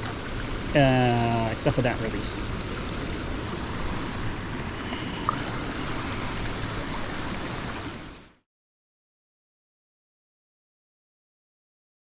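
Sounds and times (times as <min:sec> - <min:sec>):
water rushing: 0:00.0 - 0:08.4.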